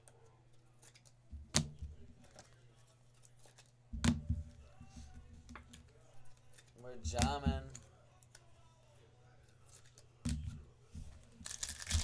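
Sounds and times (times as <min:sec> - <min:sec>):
cards clicking: 0:11.4 - 0:12.0.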